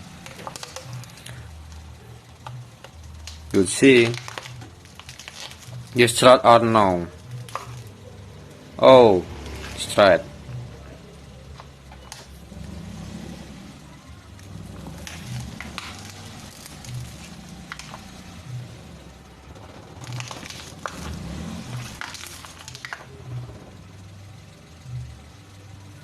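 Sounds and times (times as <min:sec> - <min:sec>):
car engine running slowly: 0:00.0 - 0:26.0
plastic bottle crushed under tyre: 0:00.2 - 0:01.5, 0:02.4 - 0:06.4, 0:14.4 - 0:18.2, 0:19.9 - 0:23.2.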